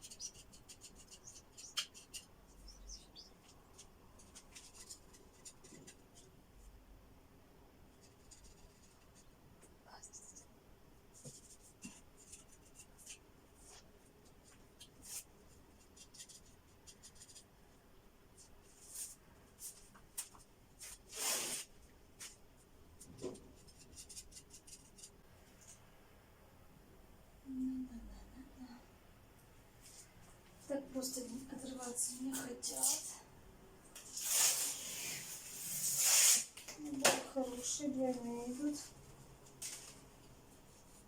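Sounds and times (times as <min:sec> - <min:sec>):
wallpaper scraping and tearing: 0:21.1 - 0:21.7, 0:34.1 - 0:36.5.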